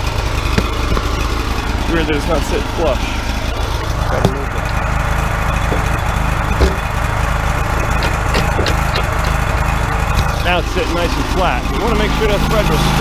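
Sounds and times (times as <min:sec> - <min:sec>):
sawmill engine idling: 0:00.0 - 0:13.0
board knocking: 0:00.6 - 0:01.2, 0:05.7 - 0:07.0.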